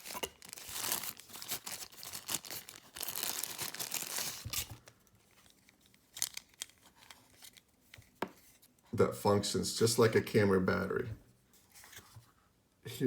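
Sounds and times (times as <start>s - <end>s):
plastic packaging crinkling: 0.0s - 7.7s.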